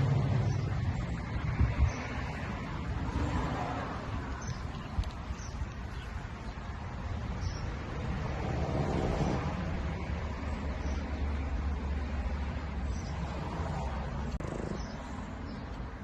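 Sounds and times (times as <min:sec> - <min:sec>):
dog snoring: 0:14.3 - 0:15.0.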